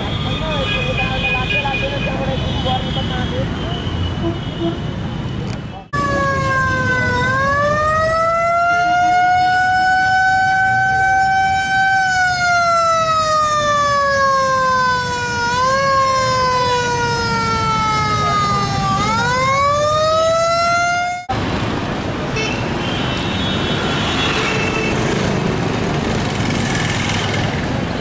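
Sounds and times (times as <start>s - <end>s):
siren wailing: 5.9s - 21.3s.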